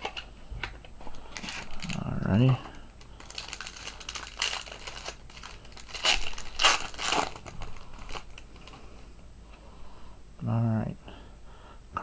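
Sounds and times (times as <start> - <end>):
wrapper crinkling: 1.3 - 8.8
foil pack tearing: 3.2 - 8.4.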